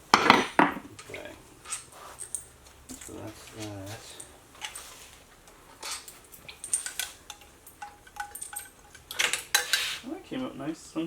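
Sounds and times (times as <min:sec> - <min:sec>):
metallic clinks and taps: 0:00.1 - 0:09.9.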